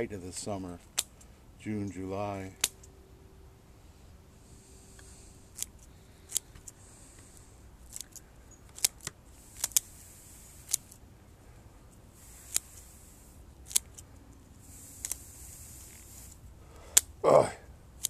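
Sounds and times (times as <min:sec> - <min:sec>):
shears snipping: 0:01.9 - 0:03.0, 0:04.8 - 0:11.0, 0:11.9 - 0:17.2.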